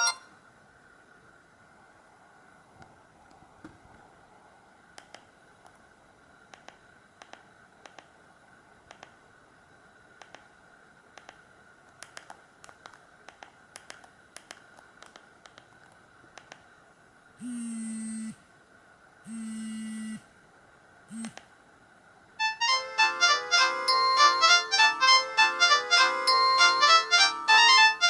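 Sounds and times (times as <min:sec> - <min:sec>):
ringtone melody: 0:00.0 - 0:00.2, 0:22.4 - 0:28.0
low buzzing tones: 0:17.4 - 0:18.5, 0:19.2 - 0:20.3, 0:21.1 - 0:21.4.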